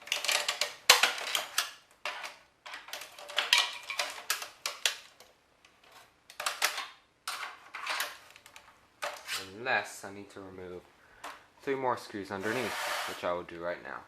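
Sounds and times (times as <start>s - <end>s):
plastic panel clicking and clattering: 0.0s - 5.3s.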